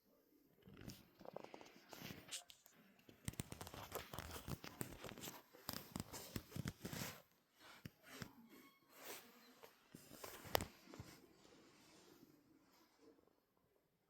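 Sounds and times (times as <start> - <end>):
close rustling and crackling: 0.7 - 7.8.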